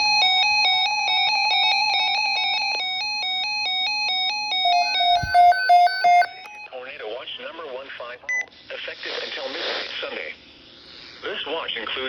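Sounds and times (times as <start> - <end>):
low and high alternating beeps: 0.0 - 6.7
fast warbling beeps: 4.7 - 6.5.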